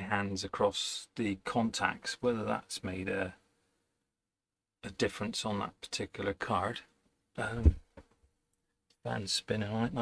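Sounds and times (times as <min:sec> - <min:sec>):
man's wordless vocal sound: 0:07.4 - 0:07.9.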